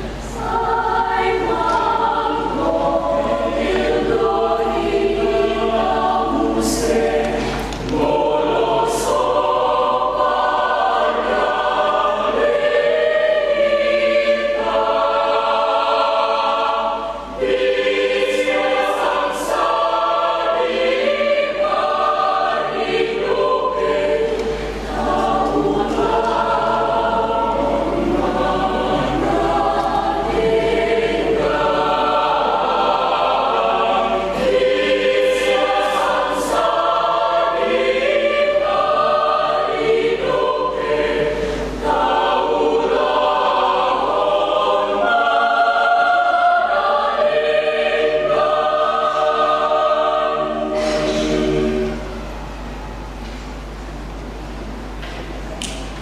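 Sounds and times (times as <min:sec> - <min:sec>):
church choir singing: 0:00.0 - 0:52.8
singers breathing: 0:41.3 - 0:41.8.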